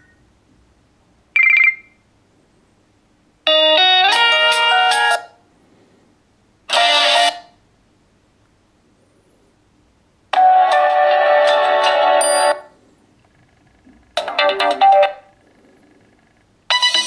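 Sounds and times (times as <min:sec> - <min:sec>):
melodic ringtone: 0:01.4 - 0:01.9, 0:10.4 - 0:12.8, 0:16.7 - 0:17.0
short chime: 0:12.2 - 0:12.7.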